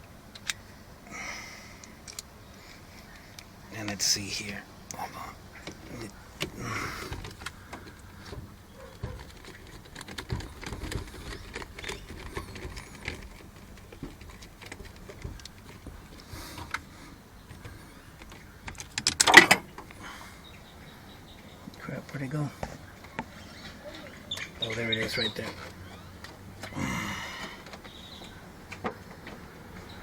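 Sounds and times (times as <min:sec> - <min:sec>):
plastic parts clicking: 0:05.6 - 0:16.9, 0:17.5 - 0:20.0
rattling clatter: 0:05.6 - 0:19.9.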